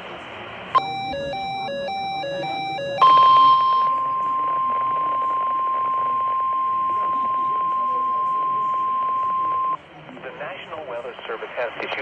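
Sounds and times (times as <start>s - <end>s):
steady high alarm tone: 0.8s - 9.8s
warbling two-pitch alarm: 0.8s - 9.8s.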